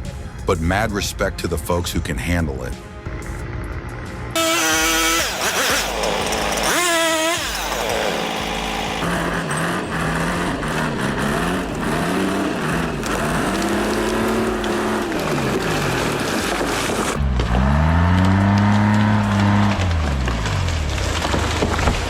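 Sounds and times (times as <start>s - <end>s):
engine revving: 3.0s - 22.0s.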